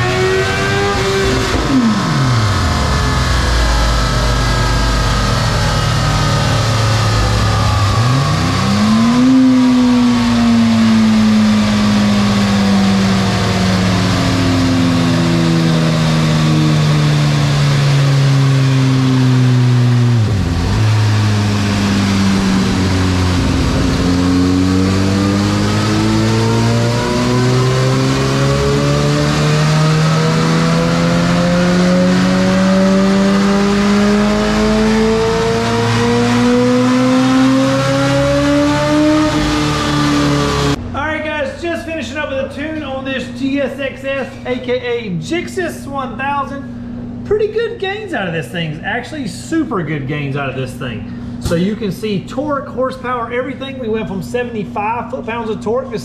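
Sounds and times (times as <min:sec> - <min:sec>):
motorcycle engine revving on dynamometer: 0:00.0 - 0:40.8.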